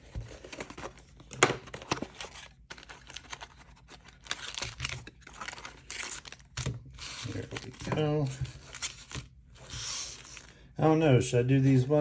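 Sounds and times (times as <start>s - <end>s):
plastic packaging crinkling: 0.3s - 10.5s.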